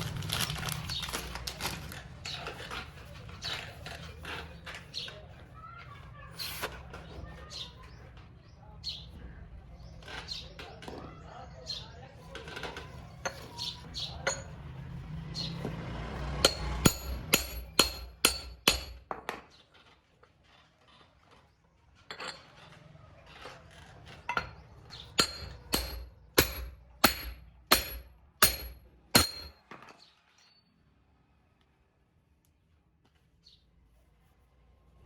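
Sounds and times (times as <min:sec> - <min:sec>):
hammer striking metal: 0:14.1 - 0:14.6, 0:16.2 - 0:19.1, 0:25.2 - 0:29.6.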